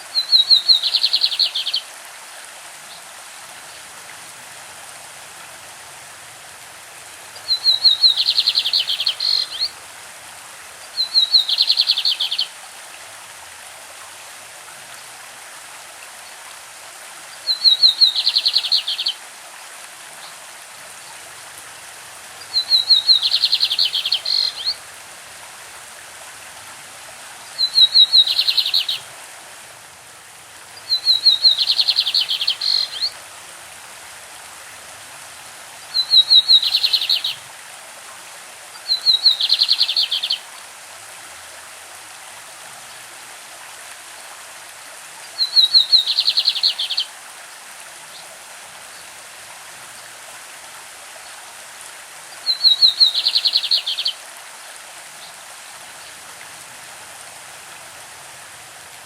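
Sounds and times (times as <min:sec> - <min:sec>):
stream rushing: 0:00.0 - 0:59.0
bird singing rapid repeated notes: 0:22.6 - 0:24.7, 0:30.9 - 0:33.1.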